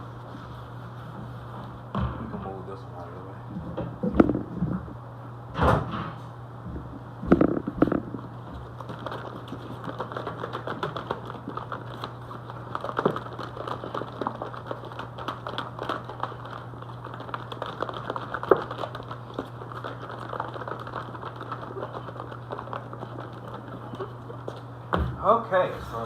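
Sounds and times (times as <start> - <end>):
steady low hum: 0.0 - 26.0
food rattling in a container: 8.6 - 24.4.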